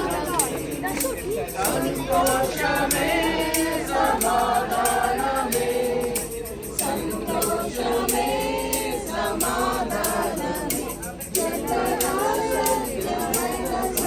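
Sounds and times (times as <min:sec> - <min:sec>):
group singing worship song: 0:00.0 - 0:14.0
steady percussive beat: 0:00.0 - 0:14.0.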